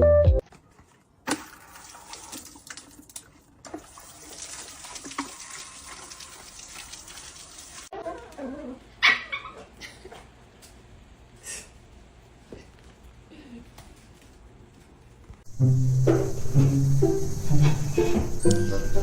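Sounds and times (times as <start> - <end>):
steady hiss: 15.5 - 19.0.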